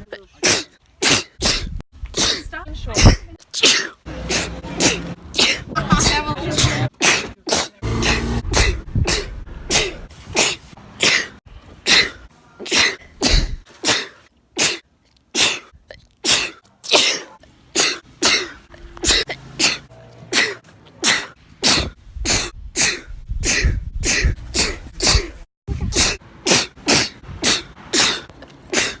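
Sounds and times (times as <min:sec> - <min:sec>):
woman sneezing: 0:00.4 - 0:05.7, 0:06.6 - 0:11.3, 0:20.4 - 0:29.0.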